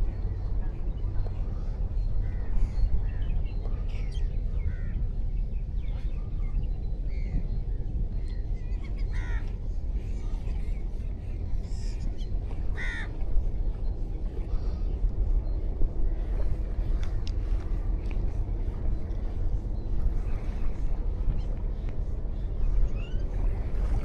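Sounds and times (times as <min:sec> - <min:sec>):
steady low rumble: 0:00.0 - 0:24.0
harsh crow-like bird calls: 0:09.0 - 0:09.5, 0:12.8 - 0:13.1.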